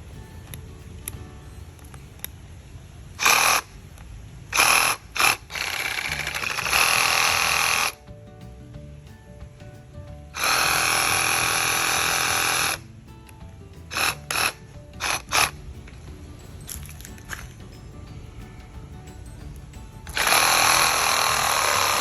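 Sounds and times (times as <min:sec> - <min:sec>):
background music: 0:00.0 - 0:03.5, 0:04.6 - 0:22.0
cordless reciprocating saw running: 0:20.2 - 0:22.0.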